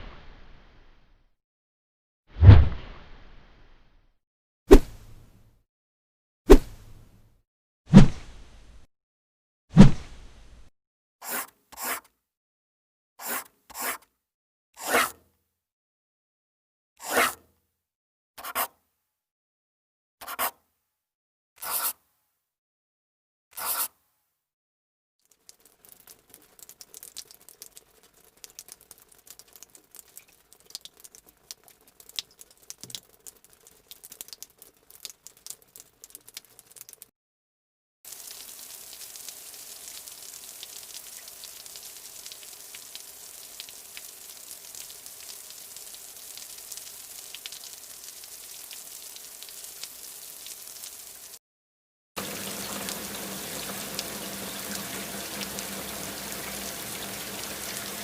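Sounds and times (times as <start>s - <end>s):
steady hiss with crackle: 38.1s - 51.3s.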